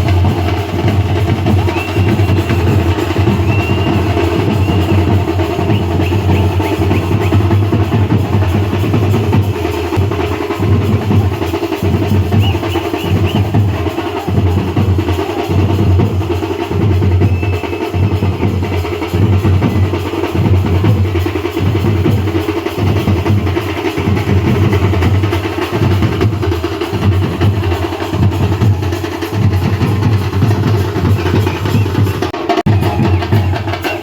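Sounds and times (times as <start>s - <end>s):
drum-heavy music with bass: 0.0s - 34.0s.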